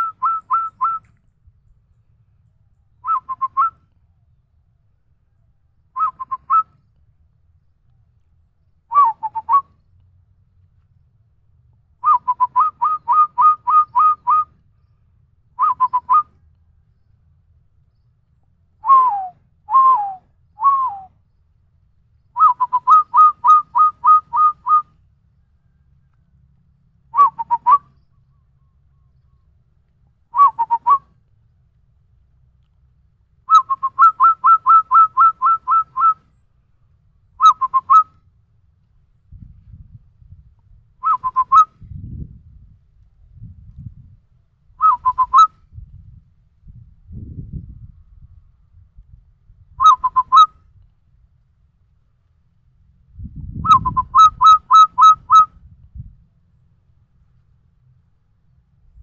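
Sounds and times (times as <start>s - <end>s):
person whistling bird call: 0.0s - 1.1s, 3.0s - 3.8s, 6.0s - 6.8s, 8.9s - 9.7s, 12.0s - 14.5s, 15.6s - 16.2s, 18.8s - 21.1s, 22.4s - 24.8s, 27.2s - 27.8s, 30.4s - 31.0s, 33.5s - 36.2s, 37.4s - 38.1s, 41.0s - 41.7s, 44.8s - 45.5s, 49.8s - 50.5s, 53.7s - 55.5s.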